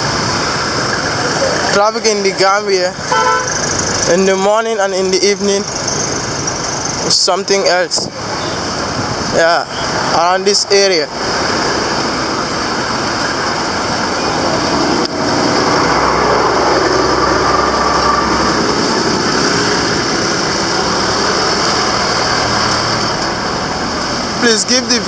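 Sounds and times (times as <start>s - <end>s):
vehicle engines idling: 0.0s - 25.0s
deep engine drone: 11.2s - 24.3s.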